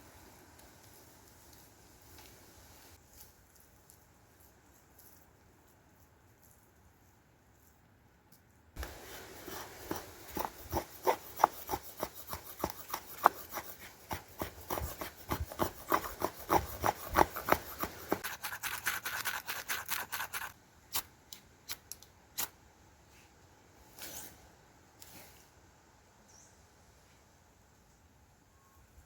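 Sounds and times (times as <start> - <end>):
quick scraping strokes: 8.8 - 20.6.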